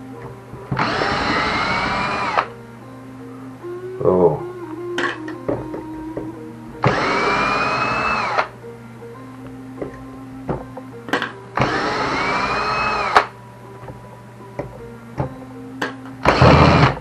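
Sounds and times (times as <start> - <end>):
electric screwdriver whining: 0.8 - 2.5, 6.8 - 8.5, 11.6 - 13.3, 16.2 - 17.0.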